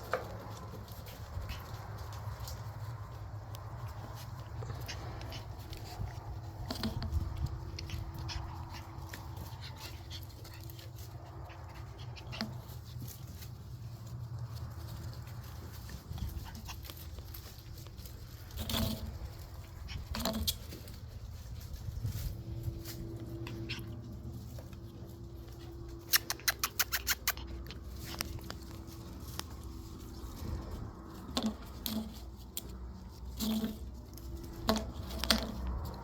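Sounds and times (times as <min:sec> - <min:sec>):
puppies scuffling and clicking: 0:00.0 - 0:36.0
puppy vocalizations: 0:25.5 - 0:28.6
louder puppy sounds: 0:26.0 - 0:27.7.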